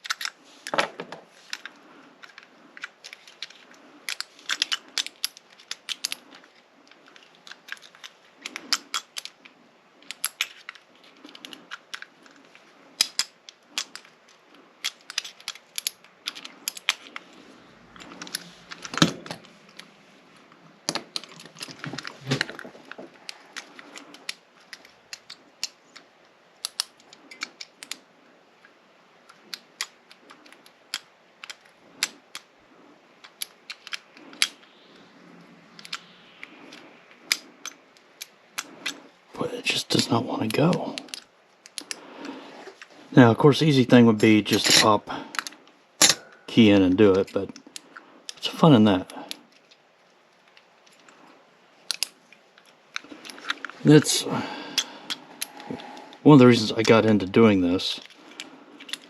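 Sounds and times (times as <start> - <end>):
lock pick clicking and scraping: 0.0 - 0.8, 1.5 - 17.3, 20.8 - 28.0, 33.2 - 34.7, 40.9 - 42.0, 51.8 - 53.8, 58.0 - 59.0.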